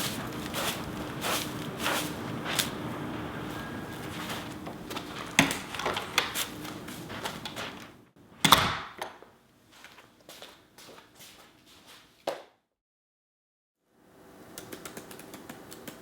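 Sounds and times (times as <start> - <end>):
faint steady hum: 0.0 - 8.4.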